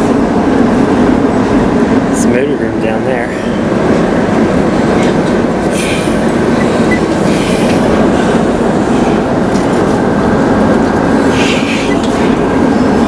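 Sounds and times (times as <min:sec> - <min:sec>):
tram rumbling along track: 0:00.0 - 0:13.0
tram wheel squeals: 0:04.8 - 0:13.0.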